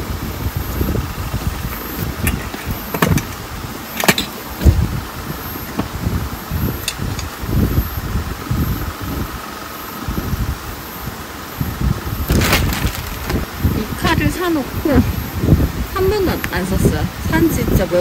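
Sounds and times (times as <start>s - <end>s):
low rumbling: 0.0s - 17.8s
objects knocked and set down: 1.7s - 4.8s, 12.3s - 13.5s.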